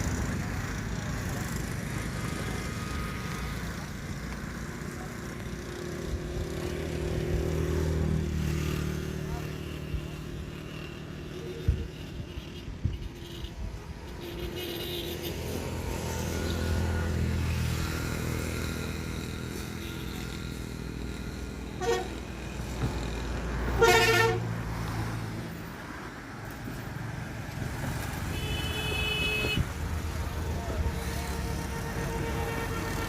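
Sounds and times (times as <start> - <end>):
traffic engine rumble: 0.0 - 33.0
vehicle horns honking: 11.4 - 15.6, 21.7 - 22.3, 23.7 - 24.5, 28.2 - 33.0
higher-pitched horn: 21.8 - 22.3, 23.7 - 24.5, 30.3 - 33.0.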